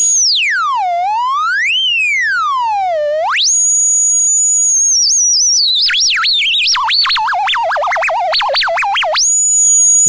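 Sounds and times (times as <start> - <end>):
electronic theremin tone warbling: 6.7 - 10.0.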